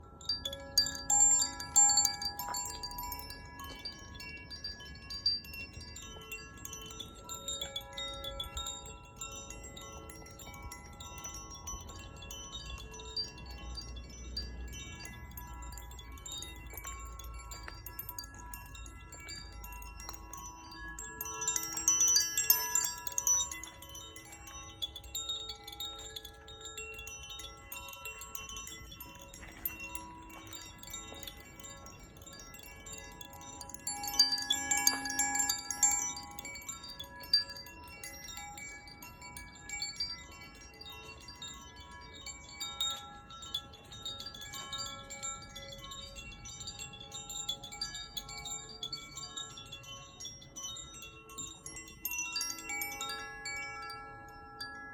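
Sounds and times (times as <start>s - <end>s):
wind chime ringing: 0.0s - 54.9s.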